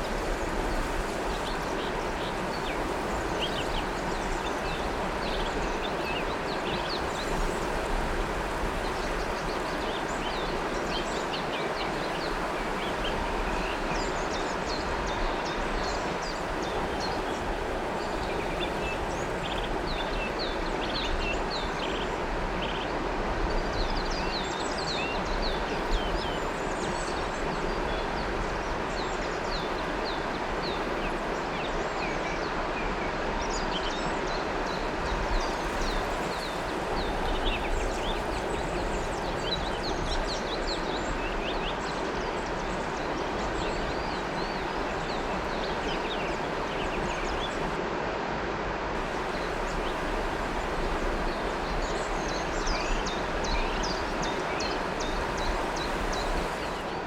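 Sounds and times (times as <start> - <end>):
river water flowing: 0.0 - 57.0
small birds chirping: 49.0 - 57.0.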